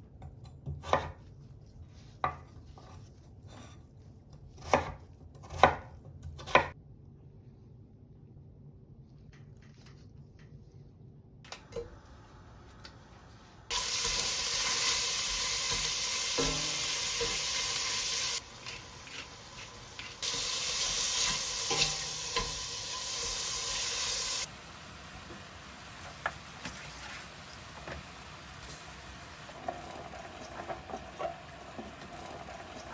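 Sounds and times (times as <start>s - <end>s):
vegetables sizzling in oil: 13.6s - 32.9s.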